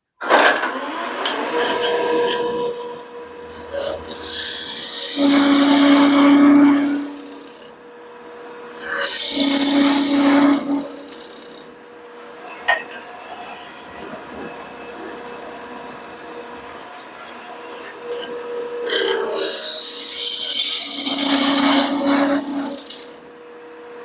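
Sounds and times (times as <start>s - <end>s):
turning tool scraping wood: 3.5s - 7.6s, 8.8s - 11.7s, 18.9s - 23.2s
wood lathe humming: 3.5s - 7.7s, 8.8s - 11.8s, 18.9s - 23.3s.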